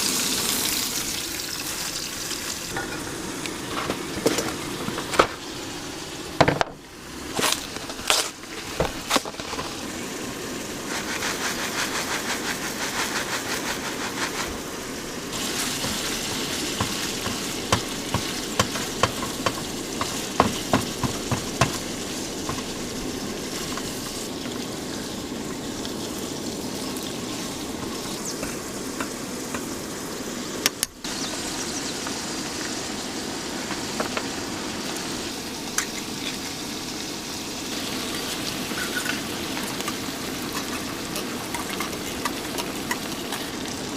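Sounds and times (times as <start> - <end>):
food sizzling in a pan: 0.0 - 43.9.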